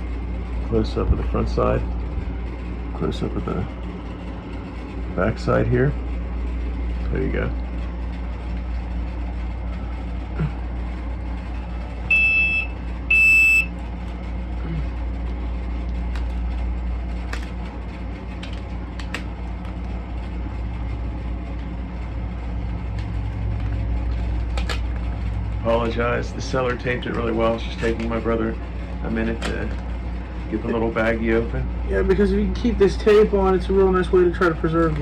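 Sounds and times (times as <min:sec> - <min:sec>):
steady low hum: 0:00.0 - 0:35.0
high electronic beeps: 0:12.1 - 0:13.7.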